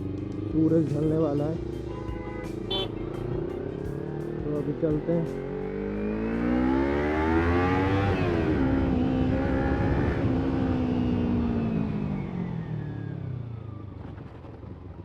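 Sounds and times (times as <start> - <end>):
motorcycle engine revving and slowing: 3.4 - 15.0.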